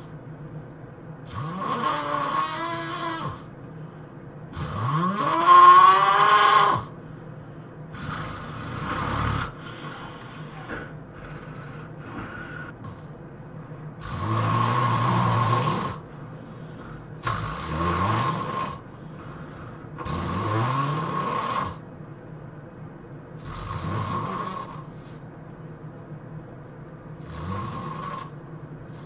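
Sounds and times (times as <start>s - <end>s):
quiet breathing: 0.0s - 1.4s, 2.5s - 4.9s, 6.8s - 14.3s, 15.2s - 20.1s, 21.8s - 25.8s, 27.0s - 29.0s
person snoring loudly: 1.2s - 3.5s, 4.5s - 6.9s, 7.9s - 13.1s, 14.0s - 16.1s, 16.8s - 21.8s, 23.4s - 24.9s, 27.2s - 28.4s.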